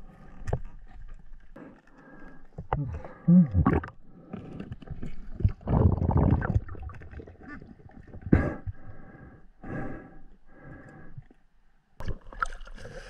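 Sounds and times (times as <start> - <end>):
water gurgling and sloshing: 0.0 - 9.5, 11.1 - 13.0.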